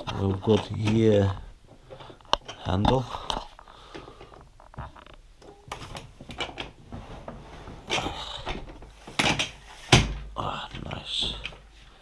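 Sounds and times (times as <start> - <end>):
plastic toolbox clicks and knocks: 5.5 - 6.8, 7.9 - 11.6.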